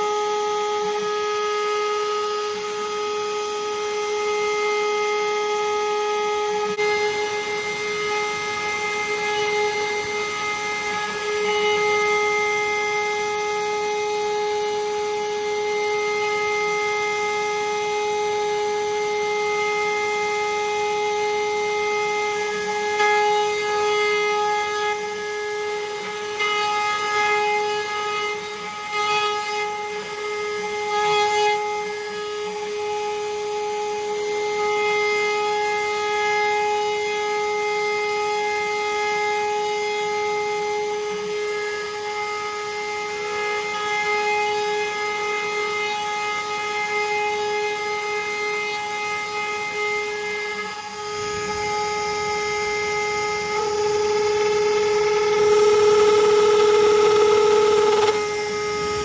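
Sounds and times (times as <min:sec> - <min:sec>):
router spindle whining: 0:00.0 - 0:59.0
end mill cutting metal: 0:06.1 - 0:15.9, 0:19.4 - 0:32.8, 0:44.9 - 0:59.0.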